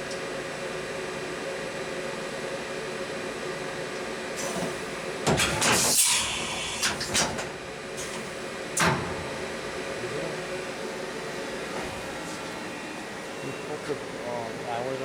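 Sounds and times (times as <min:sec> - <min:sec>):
loud machine clunks: 0:04.4 - 0:10.8
machine hum with fixed tones: 0:04.4 - 0:14.0.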